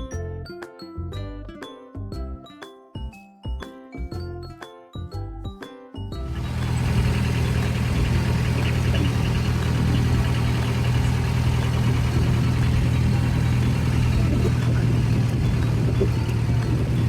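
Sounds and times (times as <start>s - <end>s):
boat engine humming: 6.2s - 17.0s.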